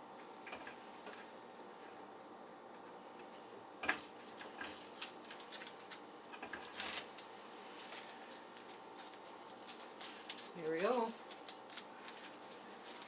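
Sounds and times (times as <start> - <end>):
plastic and paper rustling: 4.0 - 13.0.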